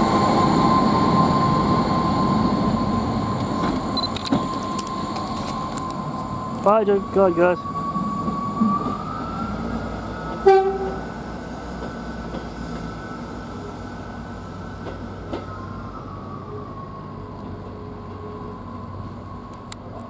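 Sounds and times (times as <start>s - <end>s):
train whine and rumble: 0.0s - 20.0s
train horn blast: 10.4s - 11.1s.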